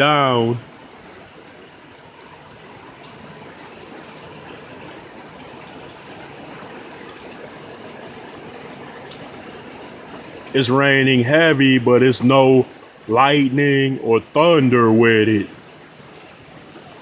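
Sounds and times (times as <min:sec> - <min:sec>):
heavy rain pouring: 0:00.0 - 0:17.0.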